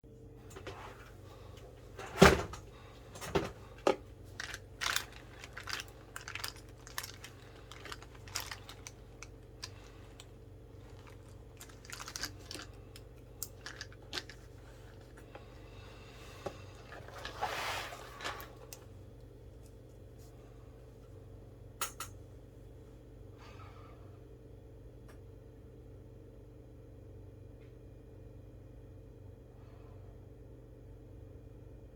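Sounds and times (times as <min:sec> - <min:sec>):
low electrical hum: 0:00.0 - 0:31.9
paper rustling: 0:02.0 - 0:12.8, 0:13.4 - 0:15.6, 0:16.3 - 0:18.8.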